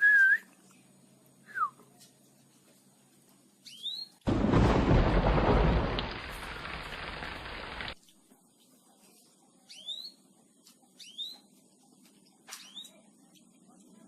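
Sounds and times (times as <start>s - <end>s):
canary whistled call notes: 3.6s - 4.2s, 9.7s - 10.2s, 11.0s - 11.5s.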